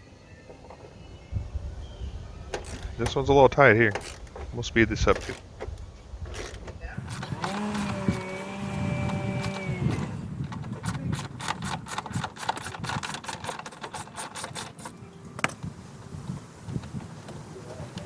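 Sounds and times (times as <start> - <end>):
ratchet wrench clicking: 2.6 - 3.0, 3.9 - 4.3, 6.3 - 14.9.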